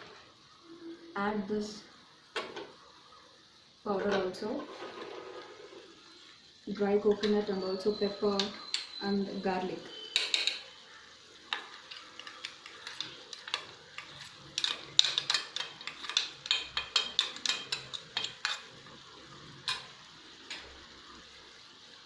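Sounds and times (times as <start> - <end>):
frying sizzle: 0.0 - 22.0
spoon scraping a frying pan: 7.0 - 10.8, 11.4 - 18.9, 19.6 - 20.8.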